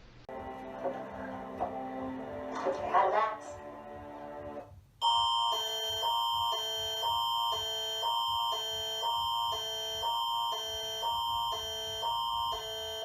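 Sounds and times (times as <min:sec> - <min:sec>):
alternating electronic tone chords: 0:05.0 - 0:13.0.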